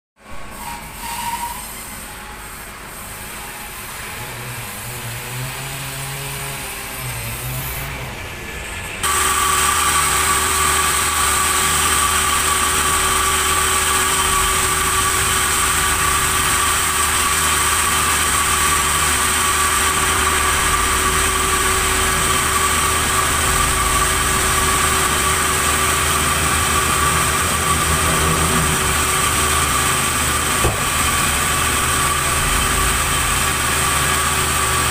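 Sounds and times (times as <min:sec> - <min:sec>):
high saw whine: 0:00.3 - 0:34.9
low machine hum: 0:07.2 - 0:34.9.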